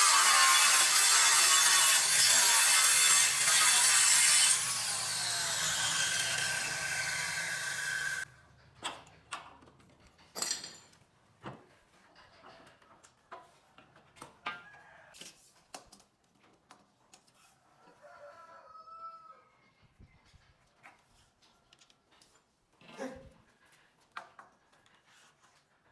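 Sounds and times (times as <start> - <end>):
power tool cutting wood: 0.0 - 8.3.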